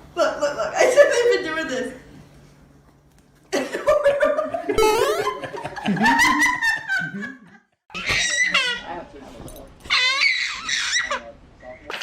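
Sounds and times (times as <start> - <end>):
laughter: 3.5 - 7.8.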